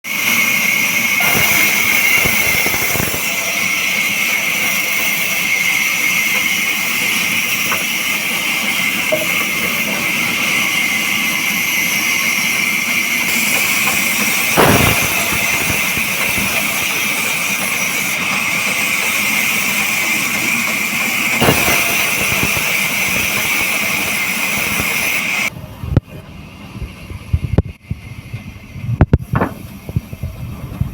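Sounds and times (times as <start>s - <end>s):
bandsaw cutting timber: 0.1s - 25.5s
scattered knocks: 6.3s - 11.2s, 13.2s - 25.2s.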